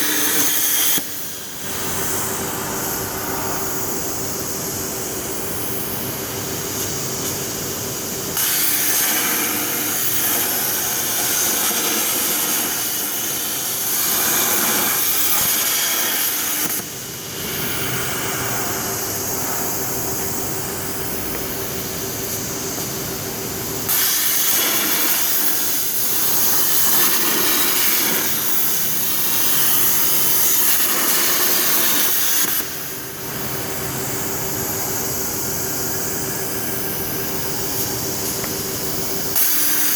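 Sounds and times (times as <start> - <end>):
plasma torch arc hissing: 0.0 - 39.9
steady machine hum: 1.0 - 8.4, 16.8 - 23.9, 32.7 - 39.4.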